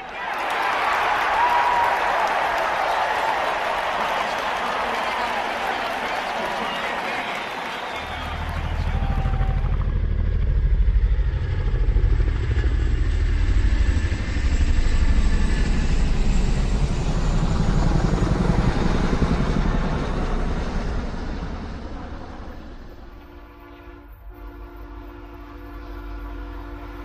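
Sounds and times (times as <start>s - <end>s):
loud engine pulsing: 7.8s - 23.2s.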